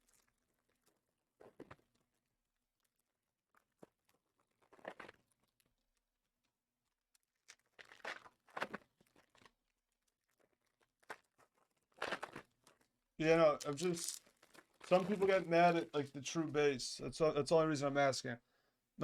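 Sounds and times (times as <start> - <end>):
wrappers crinkling and tearing: 7.2 - 16.4.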